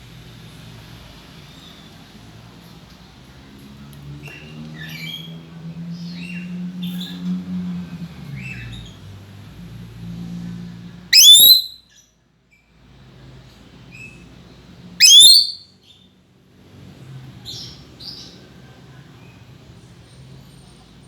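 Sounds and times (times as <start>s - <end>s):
parrot chirping: 11.1s - 11.8s, 15.0s - 15.6s
shrill rising parrot call: 11.1s - 11.8s, 15.0s - 15.6s.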